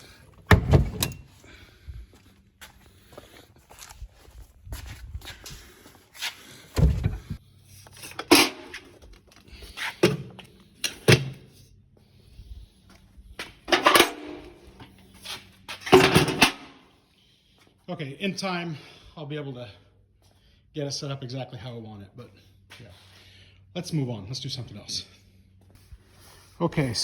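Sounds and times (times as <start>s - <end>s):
tools clunking in a tool cart: 7.9s - 11.5s, 13.7s - 14.9s, 15.8s - 16.8s.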